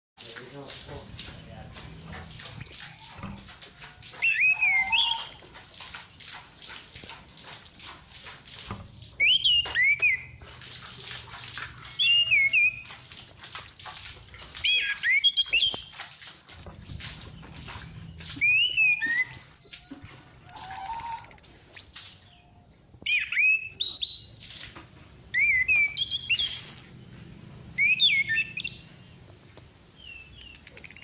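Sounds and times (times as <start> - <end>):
thrush whistling call: 2.6 - 3.4, 4.2 - 5.5, 7.6 - 8.3, 13.6 - 15.9, 18.4 - 22.5, 30.0 - 31.0.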